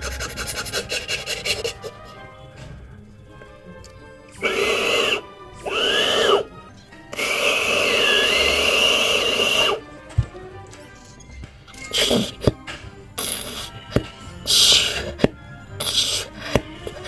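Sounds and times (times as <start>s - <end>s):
faint background music: 0.0s - 17.0s
beatboxed vocal effects: 11.9s - 12.6s, 13.2s - 17.0s.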